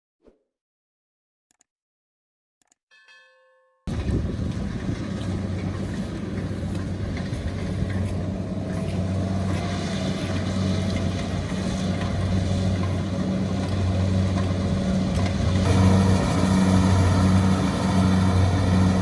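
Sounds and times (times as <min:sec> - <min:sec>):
diesel engine humming: 0:03.9 - 0:19.0.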